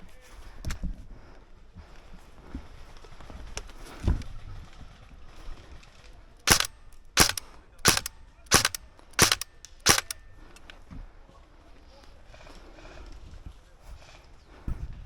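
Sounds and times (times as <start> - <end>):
airsoft gun single shots: 6.5 - 10.2.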